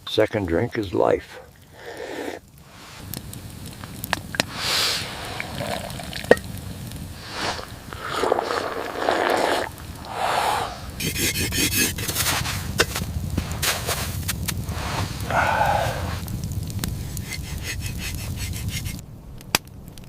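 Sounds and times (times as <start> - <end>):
rattling scrape: 11.0 - 13.0
scraping and rustling: 11.0 - 15.2.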